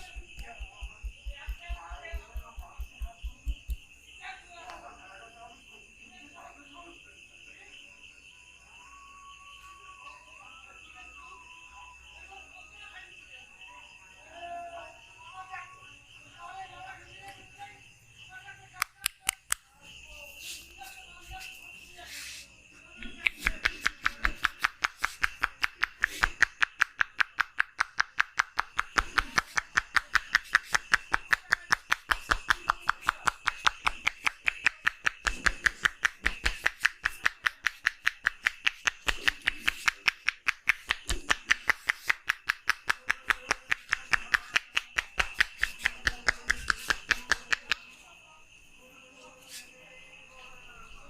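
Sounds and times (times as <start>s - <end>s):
rapid hand slaps: 0.0s - 3.9s, 23.0s - 47.8s.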